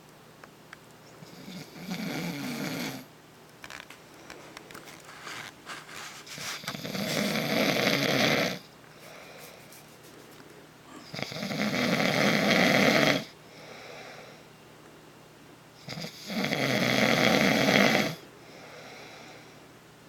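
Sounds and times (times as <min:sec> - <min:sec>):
man snoring: 0:01.3 - 0:03.1, 0:06.6 - 0:08.7, 0:11.0 - 0:14.3, 0:15.8 - 0:19.4.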